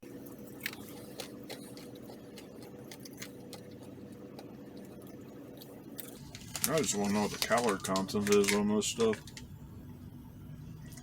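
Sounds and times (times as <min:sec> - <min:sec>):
steady low hum: 0:00.0 - 0:11.0
plastic food pouch crinkling: 0:05.6 - 0:09.5.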